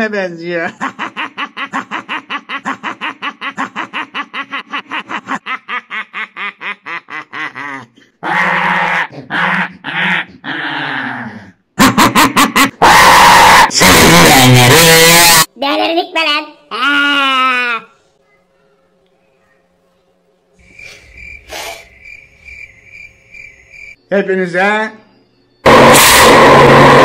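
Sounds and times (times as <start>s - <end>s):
loud sustained noise: 25.6s - 27.0s.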